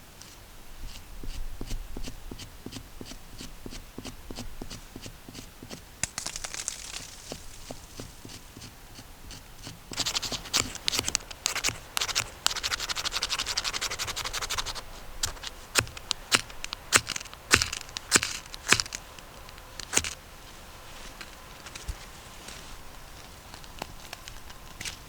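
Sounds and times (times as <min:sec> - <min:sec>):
rapid scraping and crackling: 0:05.4 - 0:25.0
sharp cracks: 0:06.0 - 0:07.7.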